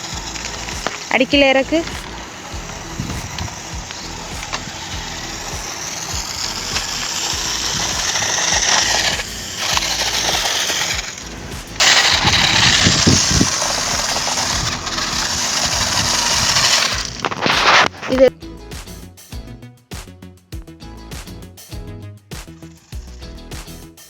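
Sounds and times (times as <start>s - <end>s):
toy car motor whirring: 0.0s - 18.3s, 22.6s - 23.4s.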